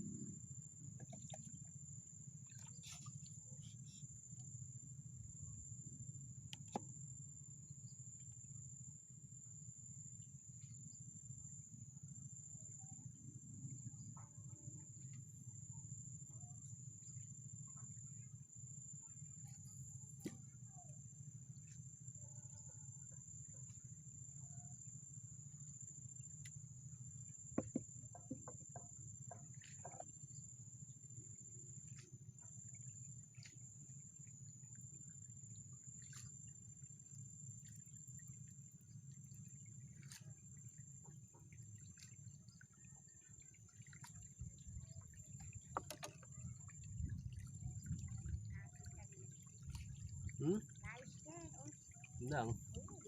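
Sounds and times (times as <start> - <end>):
insects droning: 0.0 - 53.0
faint clicks and knocks: 45.4 - 46.4.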